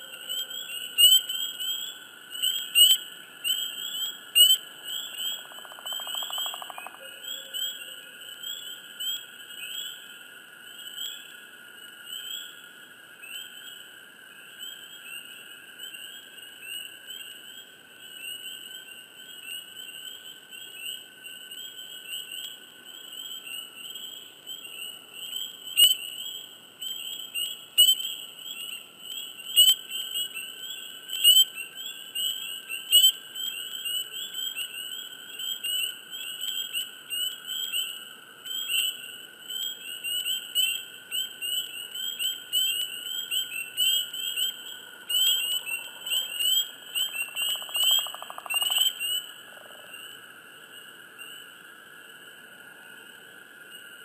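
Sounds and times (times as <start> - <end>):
spring peepers chorus: 0.0 - 54.0
close frog peeps: 1.0 - 7.9, 40.1 - 50.2.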